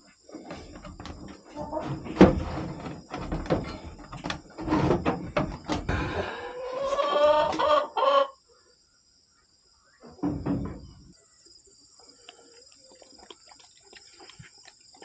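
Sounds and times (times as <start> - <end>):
knocking and rattling: 0.4 - 6.1, 10.2 - 11.1
farm animal drawn-out call: 6.1 - 8.4.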